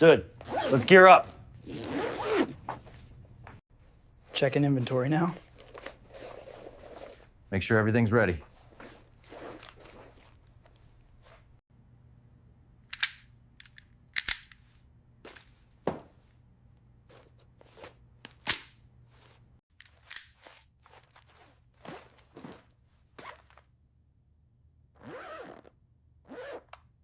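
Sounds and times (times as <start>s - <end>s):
equipment clicks and snaps: 12.9s - 14.7s, 18.2s - 18.8s, 19.7s - 20.6s.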